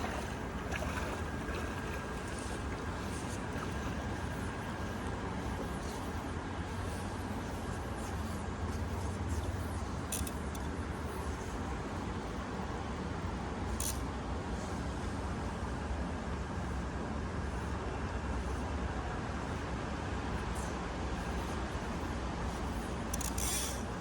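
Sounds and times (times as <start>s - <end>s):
stream water rushing: 0.0s - 5.2s.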